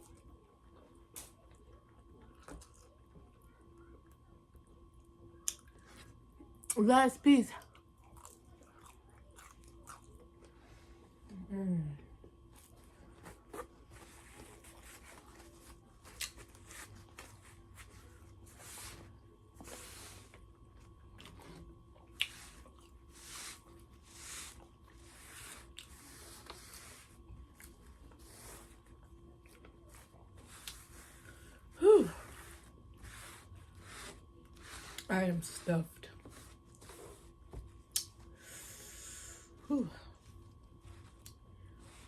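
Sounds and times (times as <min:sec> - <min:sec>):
chewing crispy fried chicken: 0:07.6 - 0:10.7, 0:15.2 - 0:17.4.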